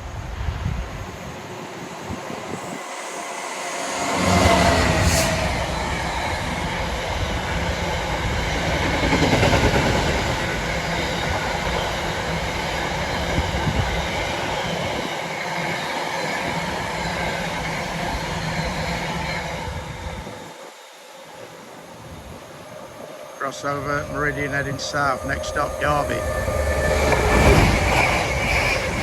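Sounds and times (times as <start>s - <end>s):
freight train wheels rumbling: 0.0s - 29.0s.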